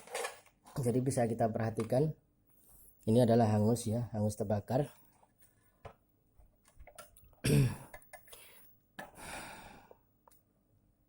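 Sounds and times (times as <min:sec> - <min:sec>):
throat clearing: 0:07.4 - 0:07.9
breathy exhale: 0:09.2 - 0:10.0.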